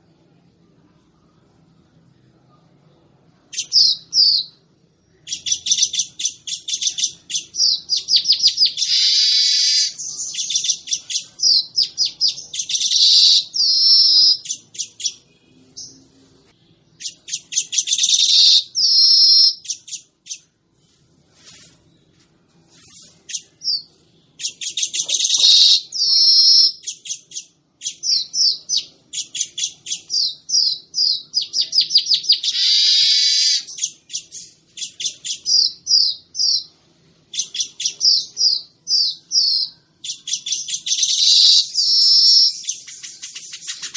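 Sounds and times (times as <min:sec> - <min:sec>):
weaver bird song: 0:03.5 - 0:43.9.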